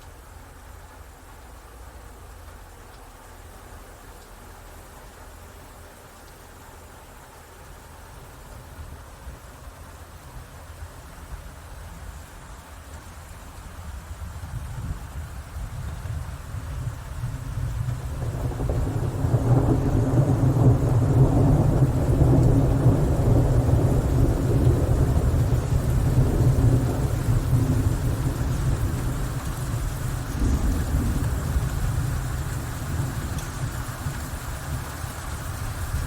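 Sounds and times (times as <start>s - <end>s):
steady rain: 0.0s - 36.0s
rolling thunder: 14.6s - 36.0s.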